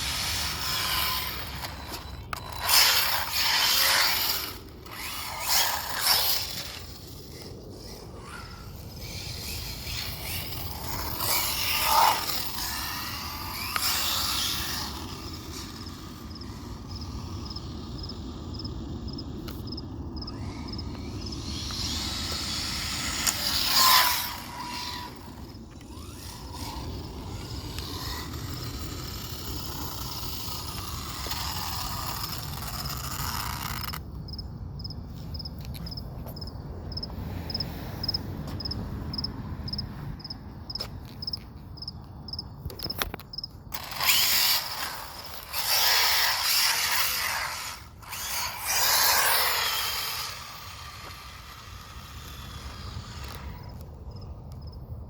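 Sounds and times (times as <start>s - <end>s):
rc car motor whining: 0.0s - 18.5s, 19.2s - 34.1s, 42.9s - 54.2s.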